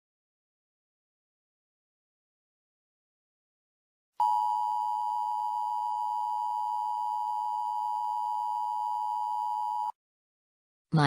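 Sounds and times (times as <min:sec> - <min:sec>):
two-tone electronic alarm: 0:04.2 - 0:10.0.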